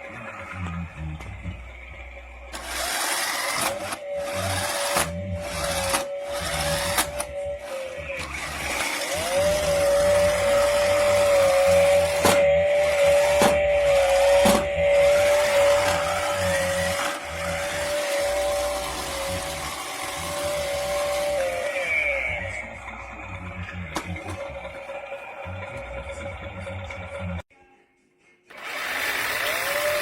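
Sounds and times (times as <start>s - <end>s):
toy chainsaw motor whine: 2.5s - 22.7s, 28.5s - 30.0s.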